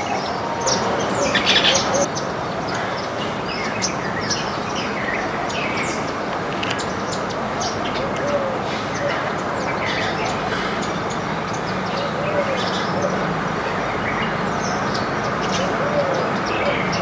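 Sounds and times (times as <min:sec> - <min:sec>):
small birds chirping: 0:00.0 - 0:17.0
steady background noise: 0:00.0 - 0:17.0.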